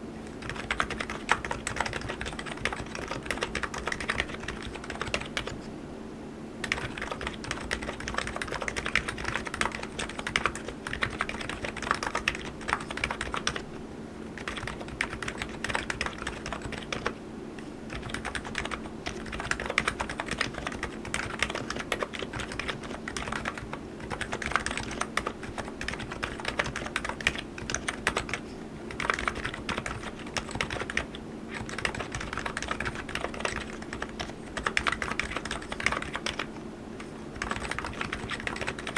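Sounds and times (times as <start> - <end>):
keyboard typing: 0.4 - 5.6, 6.6 - 13.6, 14.4 - 17.2, 17.9 - 38.9.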